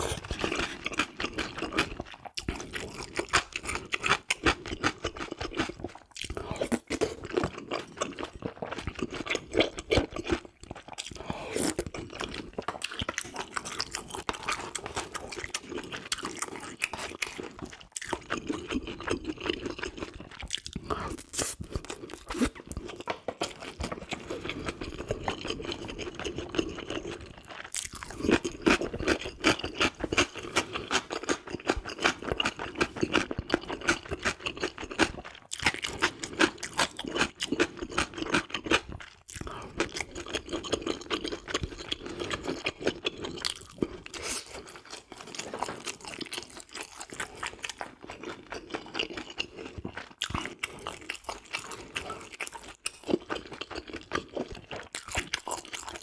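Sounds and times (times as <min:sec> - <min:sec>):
close chewing crunches: 0:00.0 - 0:56.0.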